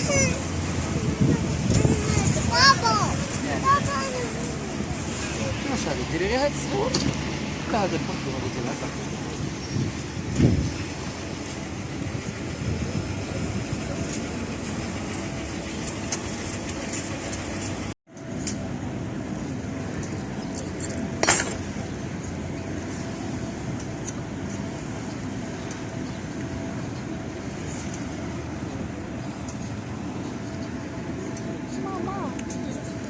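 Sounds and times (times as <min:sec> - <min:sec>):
vehicle rumbling: 0:00.0 - 0:33.0.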